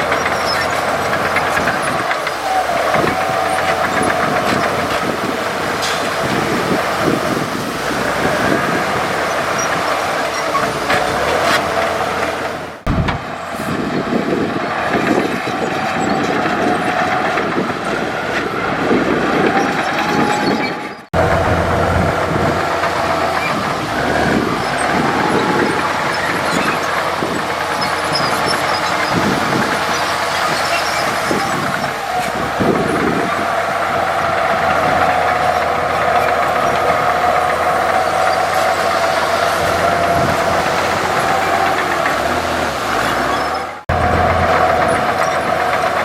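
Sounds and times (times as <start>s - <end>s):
bulldozer diesel engine running: 0.0s - 13.8s, 17.1s - 46.0s
steel tracks clanking: 9.4s - 13.6s.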